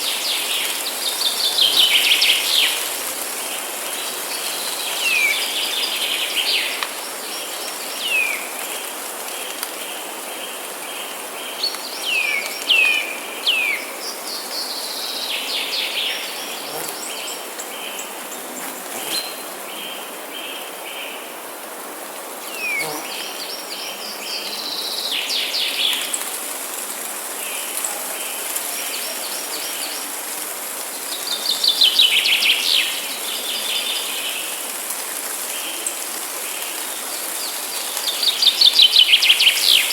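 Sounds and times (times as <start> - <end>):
steady hiss: 0.0 - 39.9
songbirds singing: 9.8 - 21.2.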